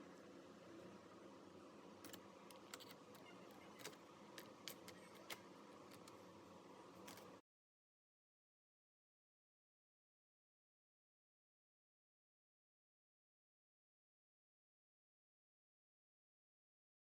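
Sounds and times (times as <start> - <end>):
small clicks and taps of laptop parts: 2.0 - 6.2.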